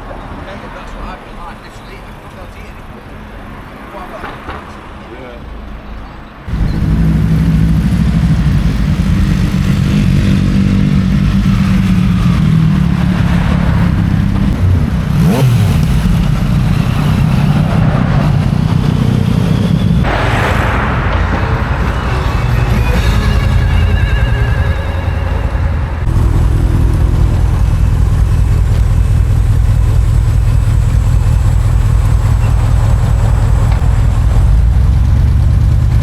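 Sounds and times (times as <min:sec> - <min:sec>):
motorcycle engine running: 0:06.5 - 0:20.3, 0:21.5 - 0:36.0.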